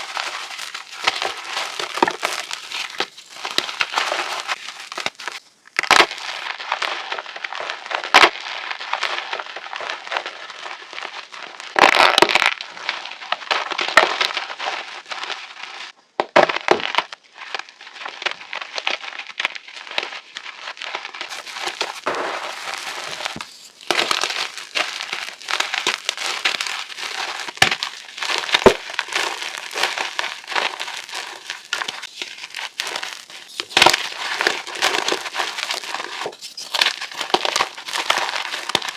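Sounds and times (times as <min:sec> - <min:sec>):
chalk crunching and crumbling: 0:00.0 - 0:07.3, 0:21.3 - 0:38.9.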